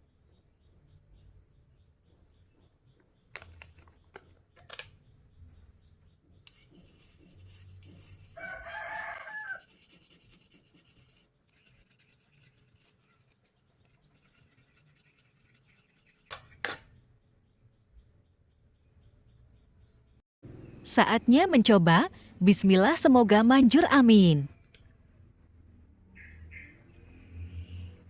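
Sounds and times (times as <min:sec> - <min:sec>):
rooster crowing: 0:08.3 - 0:09.7.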